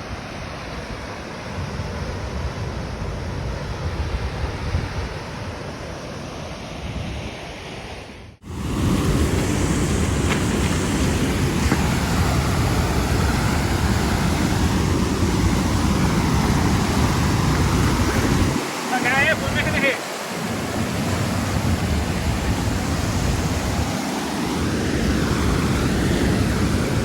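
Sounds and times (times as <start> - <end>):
wind buffeting microphone: 1.6 - 6.0, 8.1 - 27.0
wind rushing: 6.8 - 27.0
falling water: 8.5 - 24.0.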